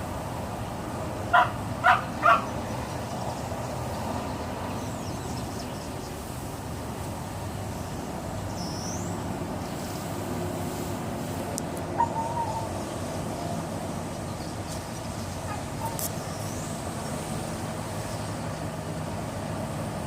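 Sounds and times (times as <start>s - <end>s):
dog barking: 1.3s - 2.5s, 12.0s - 12.7s.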